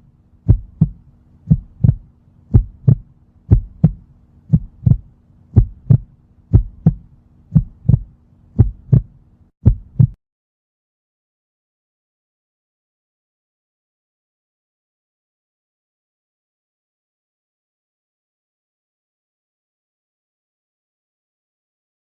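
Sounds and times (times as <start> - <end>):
faint steady hum: 0.0 - 10.2
heartbeat thumps: 0.4 - 10.2.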